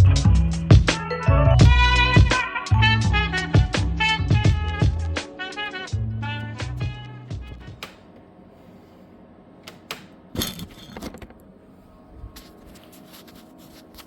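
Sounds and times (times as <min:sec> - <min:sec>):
music: 0:00.0 - 0:07.9
faint hum: 0:04.4 - 0:14.0
tools clicking and knocking: 0:09.7 - 0:11.4.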